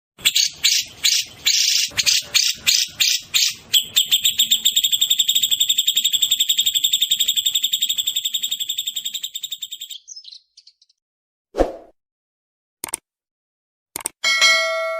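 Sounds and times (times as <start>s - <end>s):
bird singing high notes and trill: 0.2s - 11.0s.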